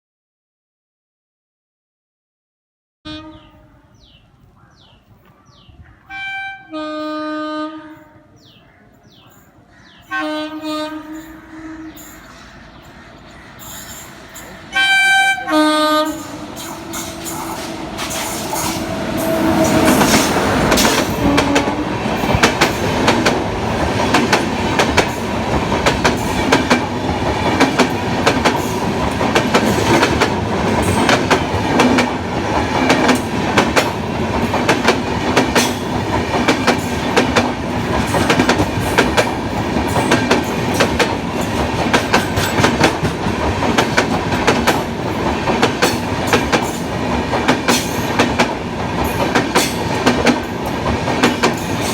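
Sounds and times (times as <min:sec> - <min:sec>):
loud train rumble: 0:09.2 - 0:51.9
train wheels clattering over rail joints: 0:16.1 - 0:51.9.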